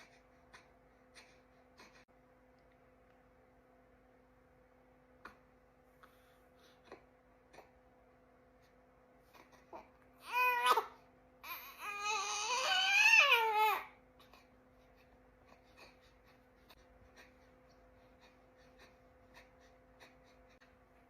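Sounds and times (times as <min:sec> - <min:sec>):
baby fussing cries: 0:09.3 - 0:14.4.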